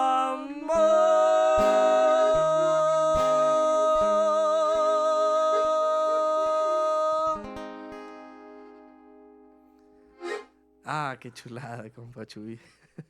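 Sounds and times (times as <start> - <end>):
man singing with vibrato: 0.0 - 7.9
acoustic guitar: 0.0 - 11.1.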